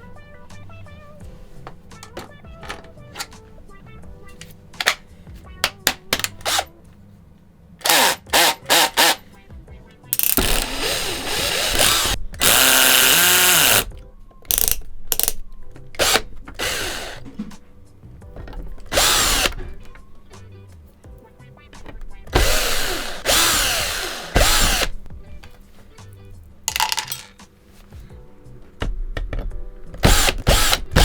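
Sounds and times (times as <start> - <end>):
power driver backing out screws: 7.8 - 9.2, 10.2 - 13.9, 16.0 - 17.4, 18.5 - 19.8, 22.3 - 25.0, 30.0 - 31.0.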